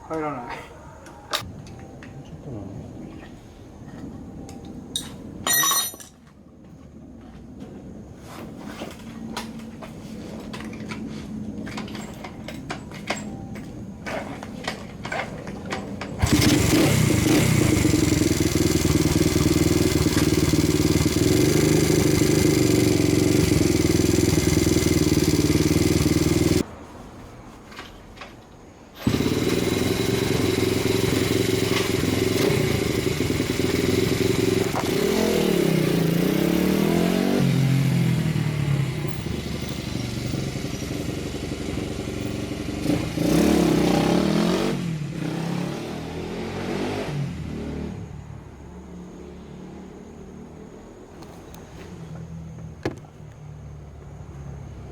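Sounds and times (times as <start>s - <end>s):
engine clicks and knocks: 16.0s - 26.6s, 29.0s - 35.2s
motorcycle engine running and revving: 16.2s - 26.6s, 29.0s - 48.2s.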